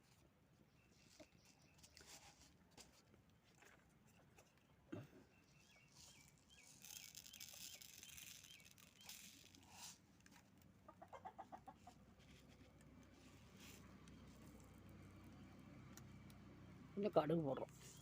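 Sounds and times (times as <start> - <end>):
chicken clucking: 10.8 - 12.1.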